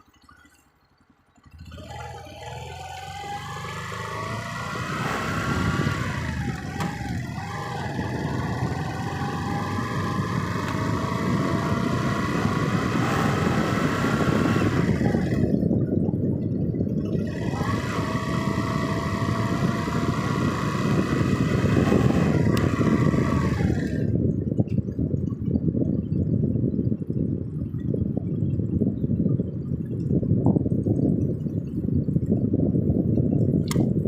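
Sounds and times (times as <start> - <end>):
vehicle motor whining: 1.4 - 15.9, 16.8 - 24.8, 33.6 - 34.0
road and wind rumble: 1.4 - 34.0.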